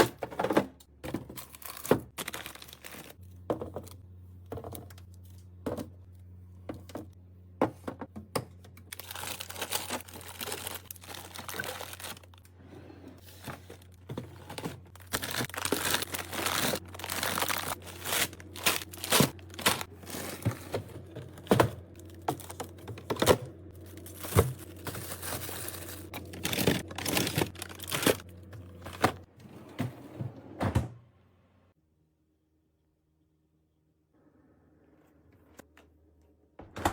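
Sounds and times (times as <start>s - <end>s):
plastic packaging crinkling: 1.3s - 3.2s, 8.9s - 12.4s, 13.2s - 21.1s, 21.9s - 29.3s
items clicking and knocking: 13.2s - 29.3s.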